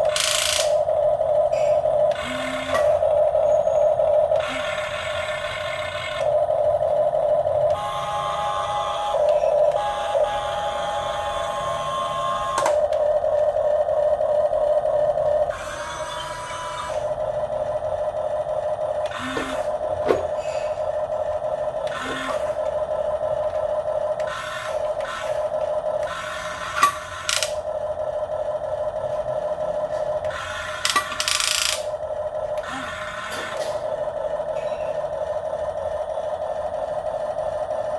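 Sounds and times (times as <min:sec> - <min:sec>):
small electric motor whining: 0:00.0 - 0:00.9, 0:01.5 - 0:13.5, 0:15.4 - 0:17.2, 0:19.0 - 0:20.9, 0:21.8 - 0:23.0, 0:24.1 - 0:27.8, 0:30.0 - 0:32.0, 0:32.6 - 0:33.9.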